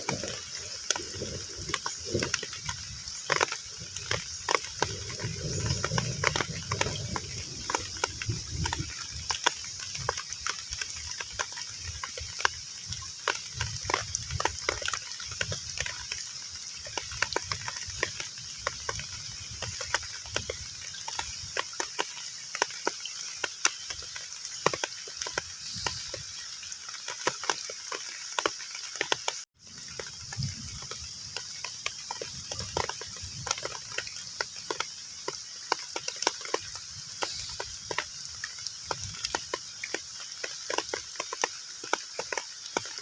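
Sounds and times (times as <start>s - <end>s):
heavy rain on pond surface: 0.0s - 43.0s.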